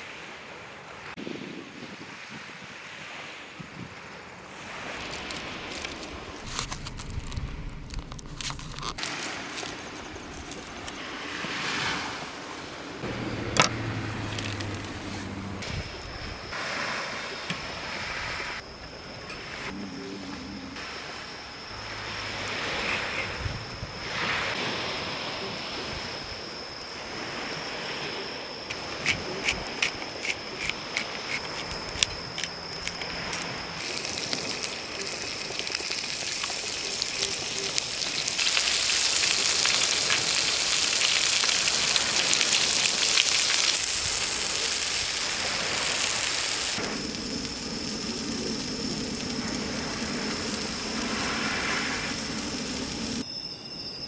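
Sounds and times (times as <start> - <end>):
campfire crackling: 4.5 - 19.8, 28.7 - 53.2
insects trilling: 8.4 - 54.0
steady hiss: 9.0 - 53.2.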